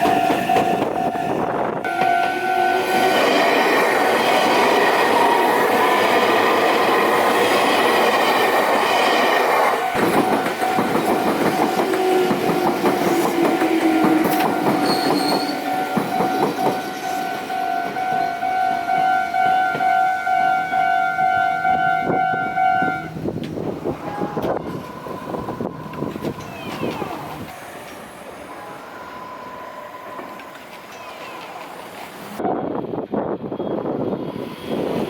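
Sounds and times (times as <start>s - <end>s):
level crossing alarm ringing: 0.0s - 8.6s, 9.3s - 23.2s
train wheels clacking over rail joints: 1.9s - 20.0s.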